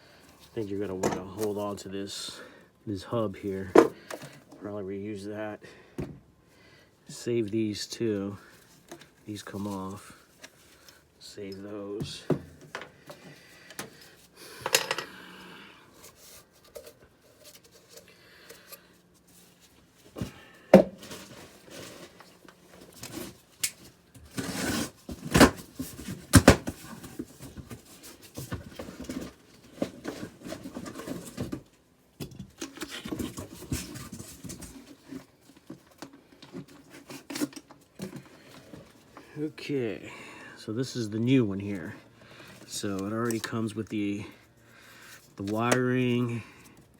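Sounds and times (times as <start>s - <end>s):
clunks and clicks of handled parts: 14.6s - 15.1s.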